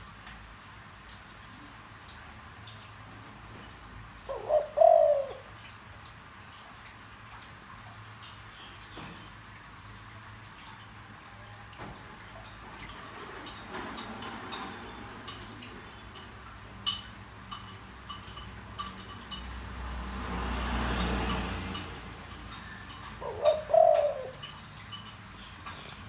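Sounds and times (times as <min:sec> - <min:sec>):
dove cooing: 0:04.2 - 0:05.6, 0:19.5 - 0:25.0.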